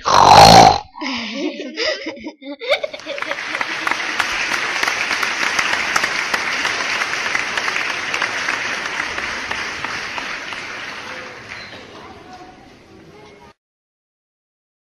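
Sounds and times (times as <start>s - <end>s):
group of people applauding: 2.8s - 12.6s.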